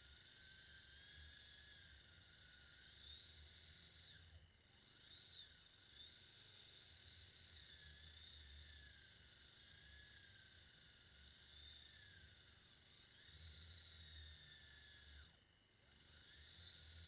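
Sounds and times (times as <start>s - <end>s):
faint wavering high whine: 0.0s - 17.0s.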